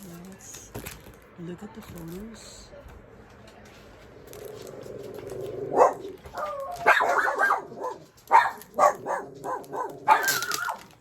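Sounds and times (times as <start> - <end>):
dogs barking: 4.7 - 11.0.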